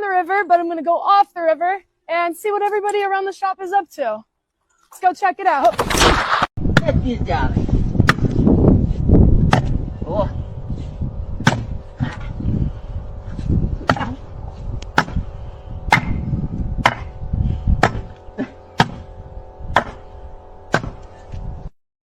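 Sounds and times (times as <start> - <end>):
steady hum: 5.6 - 21.8
low rumble: 5.9 - 21.7.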